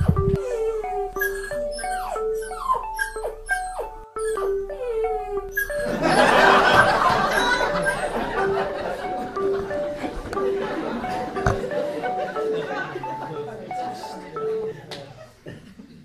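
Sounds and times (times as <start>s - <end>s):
puppy yelping: 0.0s - 8.8s
mallet melody music: 0.0s - 15.0s.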